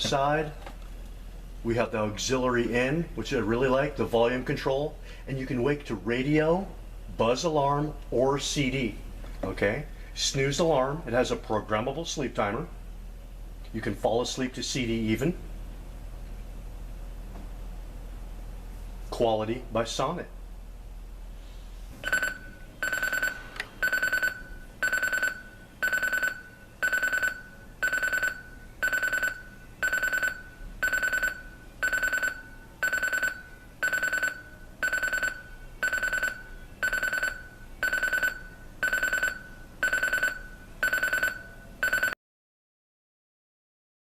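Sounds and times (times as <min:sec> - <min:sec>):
alarm clock beeping: 0:22.0 - 0:42.2.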